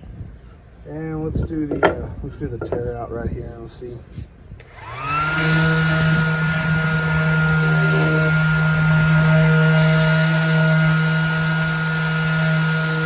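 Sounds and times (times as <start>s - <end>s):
orbital sander sanding wood: 4.7s - 13.0s.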